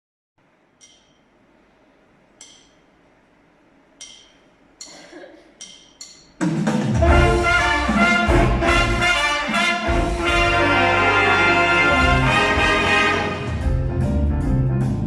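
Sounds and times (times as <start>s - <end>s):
brass band playing: 6.9s - 14.4s.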